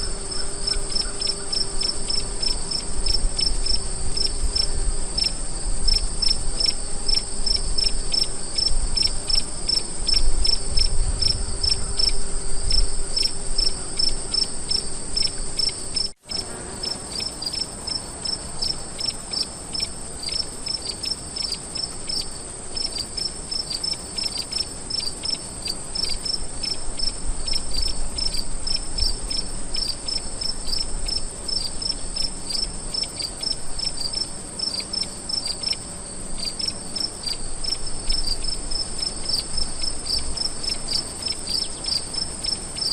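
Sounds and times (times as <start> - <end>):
crickets chirping: 0.0 - 42.9.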